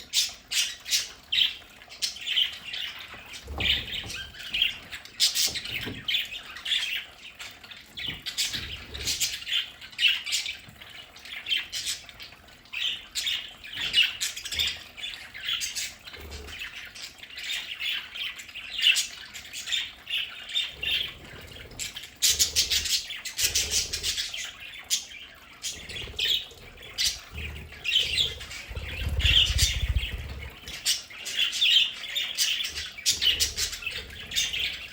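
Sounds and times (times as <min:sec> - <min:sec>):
budgerigars chattering: 0:19.7 - 0:34.9.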